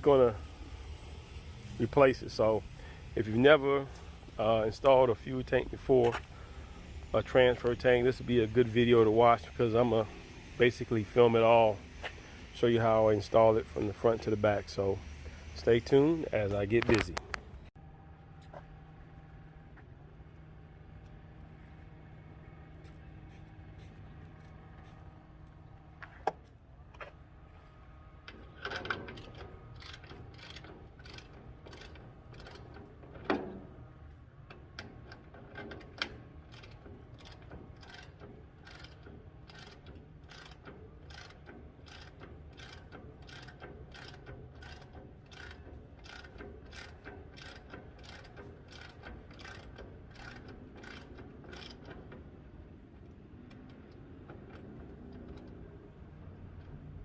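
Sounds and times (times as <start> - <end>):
ratchet wrench clicking: 28.3 - 33.5, 34.4 - 52.5.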